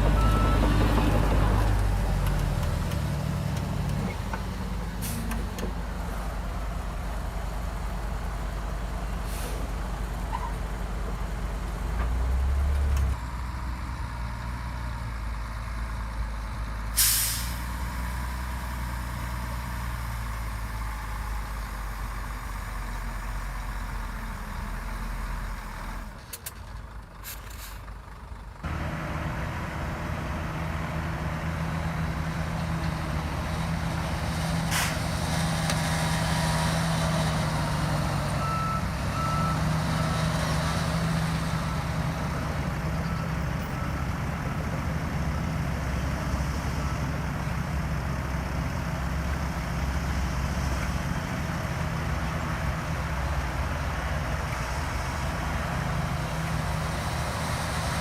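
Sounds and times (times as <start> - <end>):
diesel machinery engine rumble: 0.0 - 58.0
reversing beeps: 0.1 - 0.7, 38.4 - 40.3
air hiss bursts: 17.0 - 17.6.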